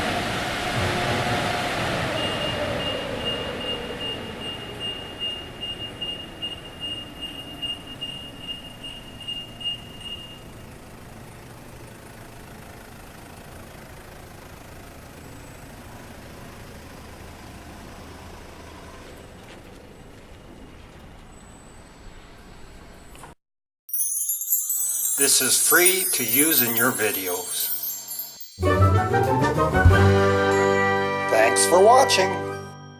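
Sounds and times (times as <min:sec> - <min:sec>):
car wash machinery hum: 0:00.0 - 0:23.2
high electronic warning beeps: 0:02.2 - 0:10.5.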